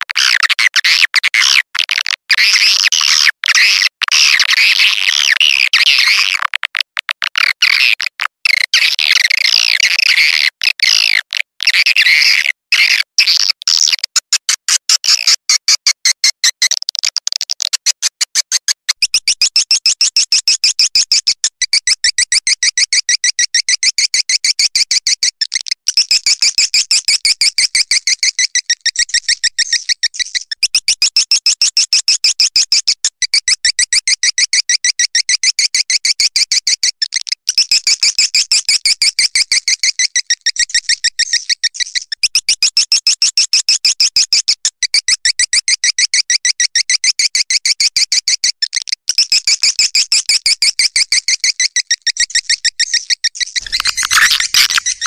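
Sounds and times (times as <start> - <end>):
swiftlet chirping trills: 53.6 - 55.0.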